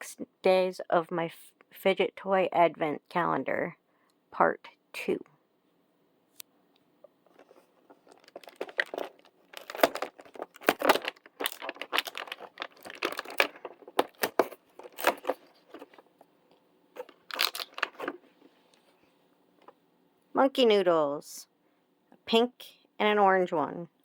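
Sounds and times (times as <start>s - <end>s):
packaging tearing and crinkling: 7.4s - 16.0s, 17.0s - 18.2s.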